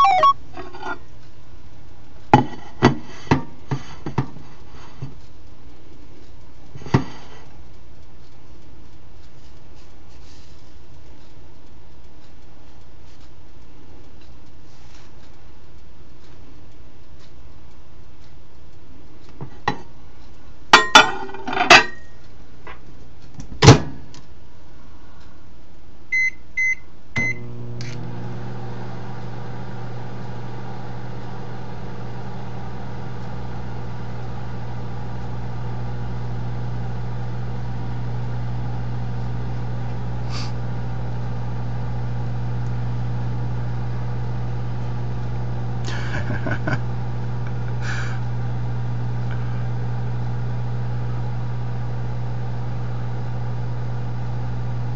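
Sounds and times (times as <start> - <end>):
keypad beeps: 0.0 - 0.9, 26.1 - 27.4
microwave oven humming: 0.0 - 5.9, 20.6 - 22.3, 26.1 - 54.9.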